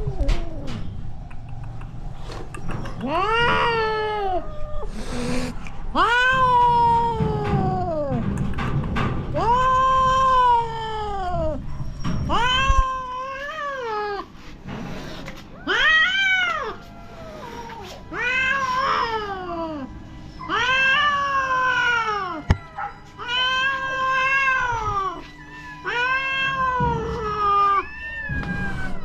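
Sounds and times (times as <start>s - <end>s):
cat yowling: 5.9s - 8.2s, 15.6s - 29.0s.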